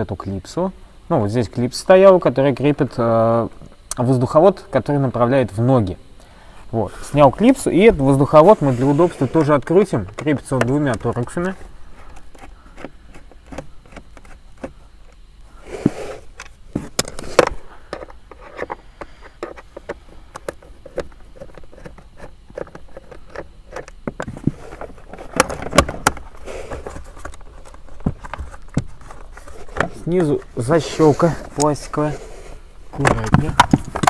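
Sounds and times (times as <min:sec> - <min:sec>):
hand tools and plastic parts knocking: 0:08.3 - 0:15.2, 0:15.8 - 0:32.1, 0:32.9 - 0:34.0.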